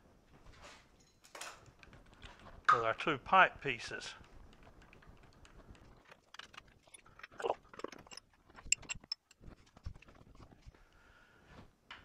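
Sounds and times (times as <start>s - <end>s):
metal workpieces clicking and knocking: 1.0s - 3.1s, 4.1s - 10.6s
sharp ticks: 3.7s - 6.8s.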